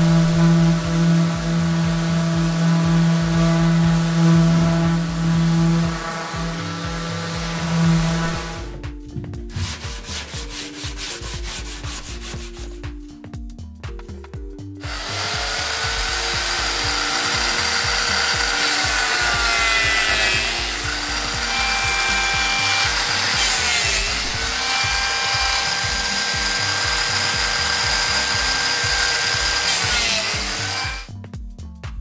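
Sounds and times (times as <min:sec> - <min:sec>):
power tool grinding wood: 0:00.0 - 0:08.9, 0:14.8 - 0:31.1
background music with bass line: 0:00.0 - 0:32.0.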